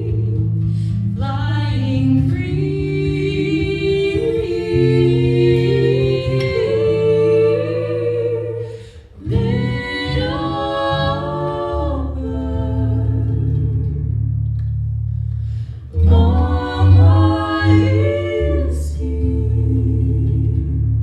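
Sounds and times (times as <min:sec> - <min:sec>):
low sustained tones: 0:00.0 - 0:21.0
person singing long notes: 0:15.9 - 0:20.4.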